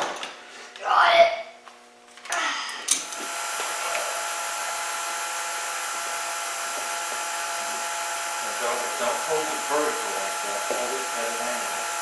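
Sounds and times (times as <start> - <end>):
power tool whining: 2.9 - 12.0.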